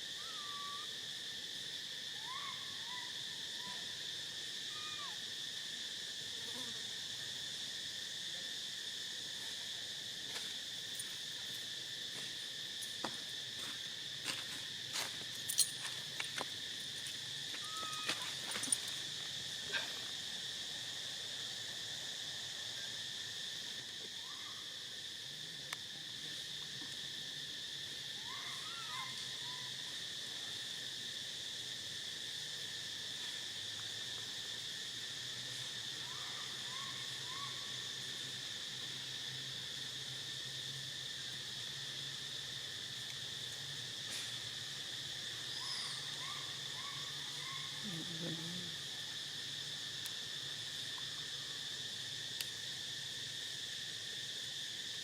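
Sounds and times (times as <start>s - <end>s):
insect chorus: 0.0s - 55.0s
rising and falling insect calls: 0.0s - 55.0s.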